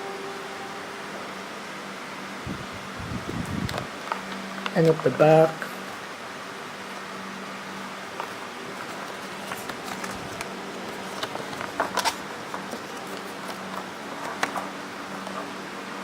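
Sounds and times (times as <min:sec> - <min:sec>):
steady low hum: 0:00.0 - 0:16.0
packaging being handled: 0:08.1 - 0:15.4.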